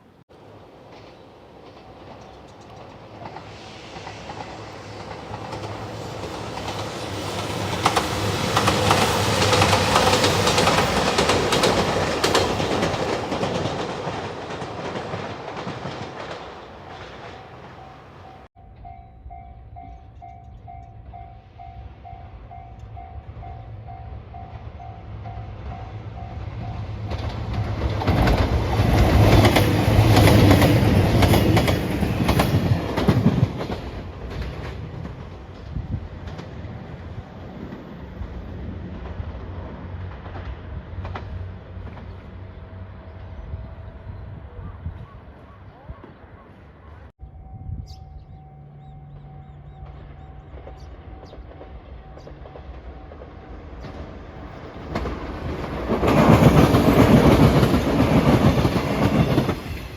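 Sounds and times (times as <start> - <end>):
train passing loudly: 0.0 - 59.9
train wheels clickety-clack: 0.8 - 18.5, 24.4 - 42.5, 49.2 - 59.9
level-crossing warning bell: 17.2 - 27.0, 47.2 - 53.5.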